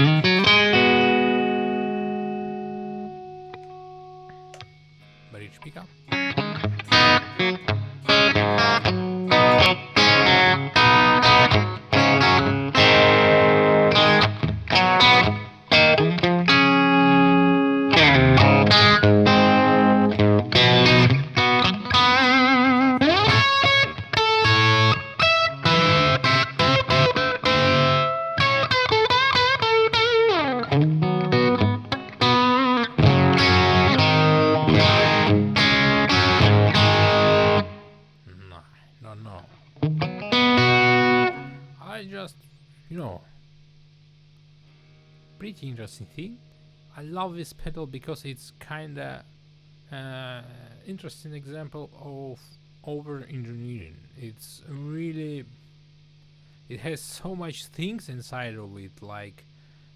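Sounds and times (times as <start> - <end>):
overdriven electric guitar: 0.0 - 5.2, 6.0 - 38.0, 39.7 - 41.8.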